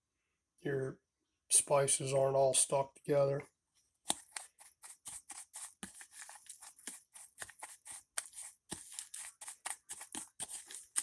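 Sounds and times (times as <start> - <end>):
spice rub scraping clicks: 4.1 - 11.0.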